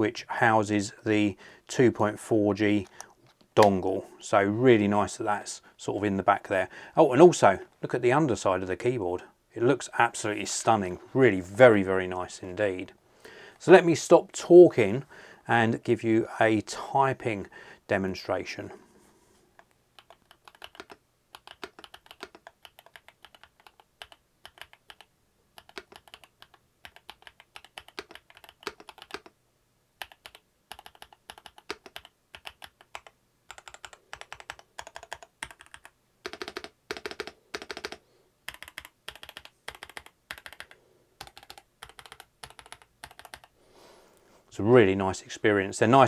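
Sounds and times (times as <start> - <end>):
typing on mechanical keyboard: 20.0 - 29.4, 30.0 - 43.6.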